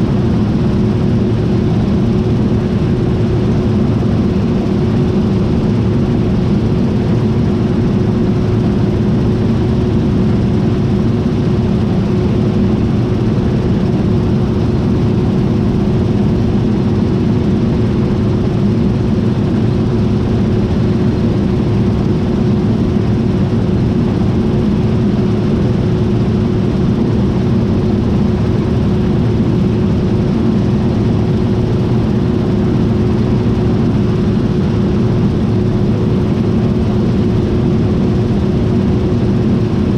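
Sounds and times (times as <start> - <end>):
combine harvester drone: 0.0 - 39.9.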